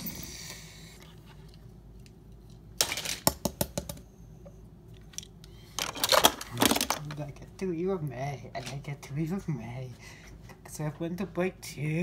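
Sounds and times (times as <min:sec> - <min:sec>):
toy cars clattering: 0:02.8 - 0:03.4, 0:05.8 - 0:07.2.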